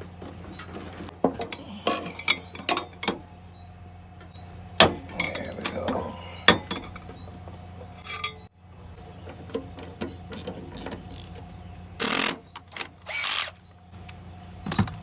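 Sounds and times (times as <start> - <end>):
short loud bursts of tool noise: 12.0 - 13.6.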